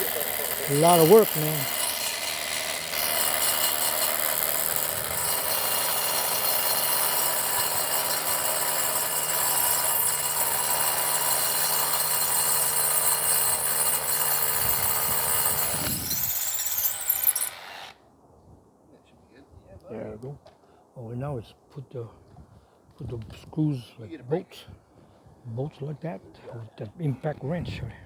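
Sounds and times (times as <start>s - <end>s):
hammer drill boring into concrete: 0.0s - 18.0s.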